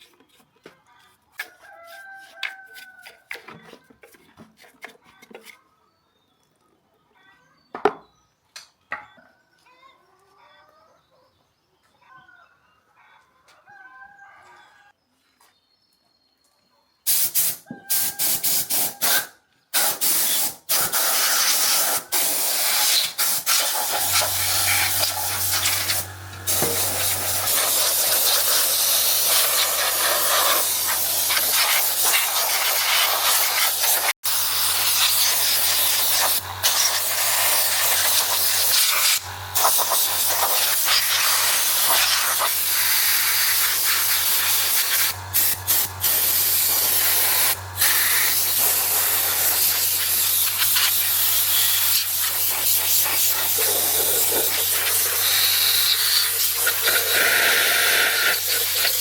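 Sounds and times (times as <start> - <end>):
high-pressure jet hissing: 17.1 - 59.0.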